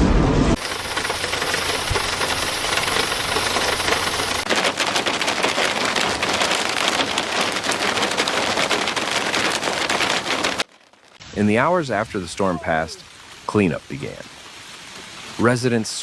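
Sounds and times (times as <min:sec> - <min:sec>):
hail clattering on hard surfaces: 0:00.6 - 0:11.2.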